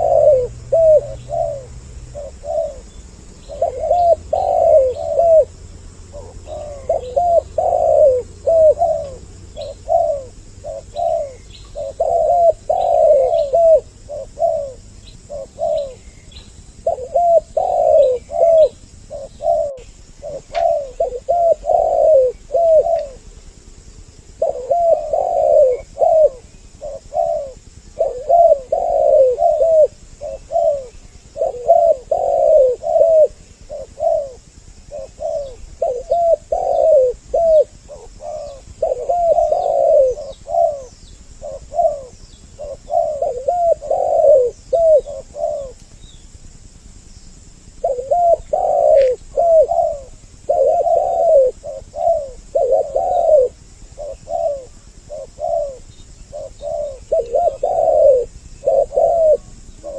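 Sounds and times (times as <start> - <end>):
doves cooing: 0.0 - 59.9
faint small bird chirps: 6.1 - 23.2, 47.0 - 59.9.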